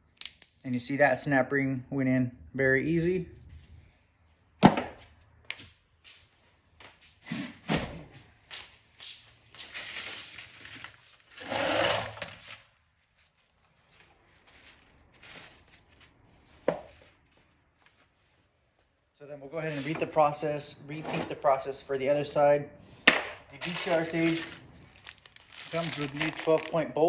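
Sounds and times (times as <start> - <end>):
metal parts scraping: 11.3 - 12.6, 23.6 - 26.9
small metal parts clicking: 23.6 - 26.8.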